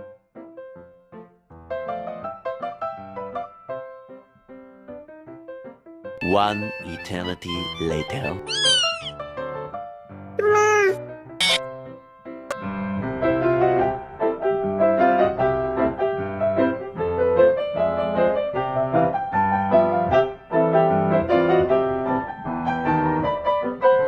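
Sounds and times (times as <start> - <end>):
piano music: 0.0 - 24.0.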